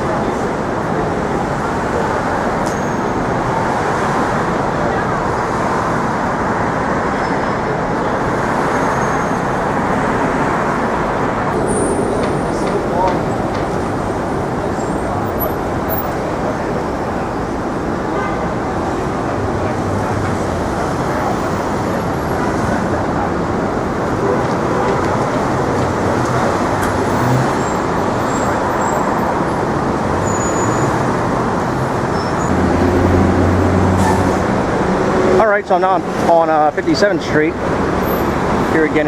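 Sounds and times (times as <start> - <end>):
passing cars and buses: 0.0 - 39.0
heavy engine hum close by: 7.6 - 35.4.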